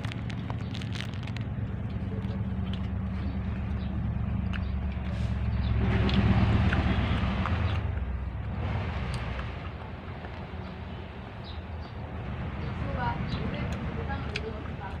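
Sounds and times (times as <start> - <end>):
motor engine running: 0.0 - 9.9.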